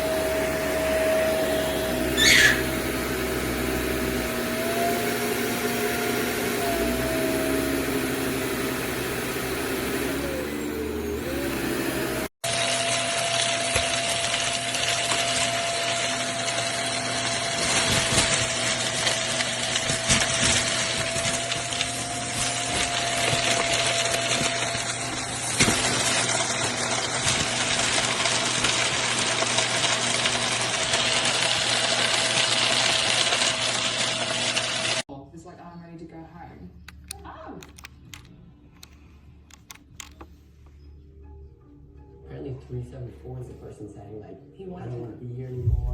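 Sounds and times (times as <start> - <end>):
vacuum cleaner running: 0.0 - 35.1, 45.6 - 45.9.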